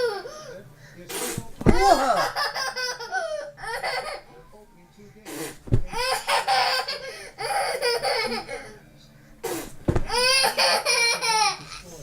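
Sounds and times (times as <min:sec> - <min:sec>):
hand-made fart noises: 0:09.4 - 0:10.2.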